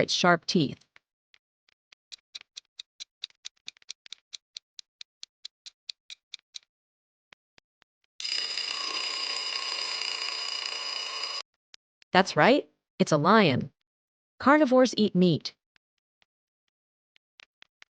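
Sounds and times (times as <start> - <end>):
fast clock ticking: 2.1 - 4.8
steady alarm ring: 8.2 - 11.4.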